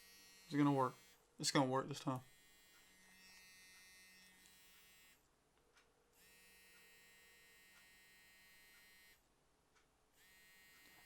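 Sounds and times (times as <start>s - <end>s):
phone vibration buzzing: 0.0s - 1.2s, 2.2s - 5.2s, 6.2s - 9.2s, 10.2s - 11.0s.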